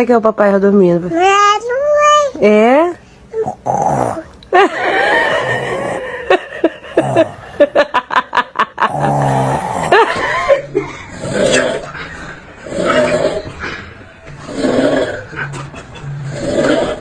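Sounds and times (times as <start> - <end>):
loud rasping snoring: 3.4 - 4.3, 8.8 - 17.0
laughter: 4.5 - 9.1, 9.9 - 11.0, 15.3 - 16.2.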